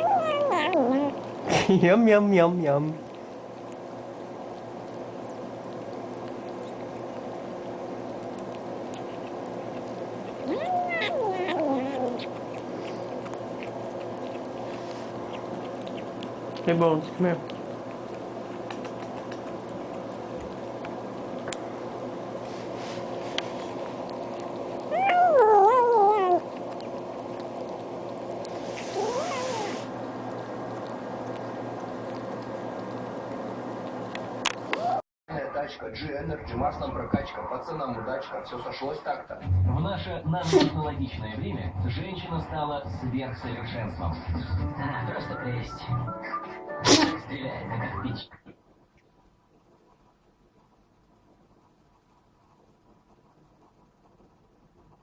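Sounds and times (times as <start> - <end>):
cat meowing: 0.0 - 1.2, 10.4 - 12.3, 24.9 - 26.4, 29.0 - 29.8
cat yowling: 0.0 - 1.2, 10.4 - 12.3, 24.9 - 26.5, 29.0 - 29.8
cat chewing food: 0.0 - 34.7, 48.5 - 55.0
steady background hum: 0.0 - 55.0.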